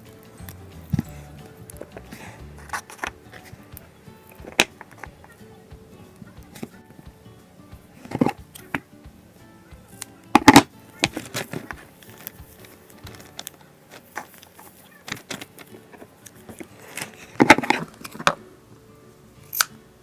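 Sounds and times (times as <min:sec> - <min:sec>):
small containers clicking and rustling: 0:10.3 - 0:18.4.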